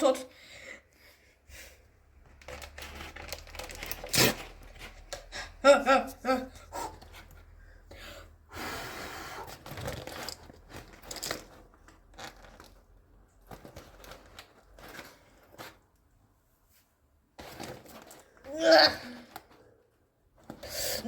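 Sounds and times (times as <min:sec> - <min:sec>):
crunches and rustles: 0:02.2 - 0:05.6, 0:09.4 - 0:20.7
packaging crinkling and tearing: 0:02.3 - 0:05.3, 0:09.4 - 0:15.8.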